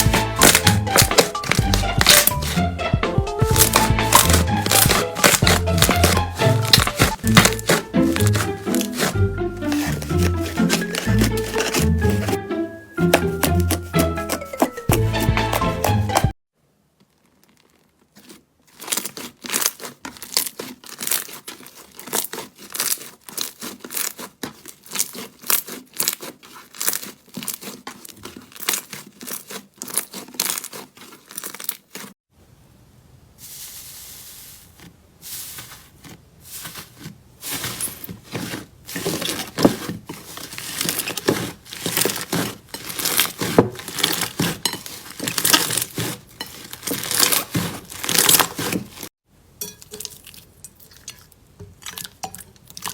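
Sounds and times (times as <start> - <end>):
slime squeezed with sticky crackles: 0.0 - 2.6, 17.1 - 32.1.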